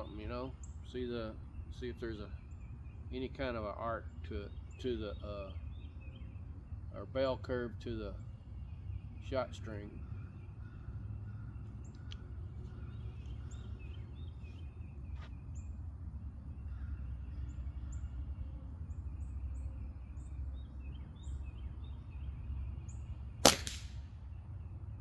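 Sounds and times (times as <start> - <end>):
small birds chirping: 0.0 - 25.0
air pistol shot: 23.4 - 24.0.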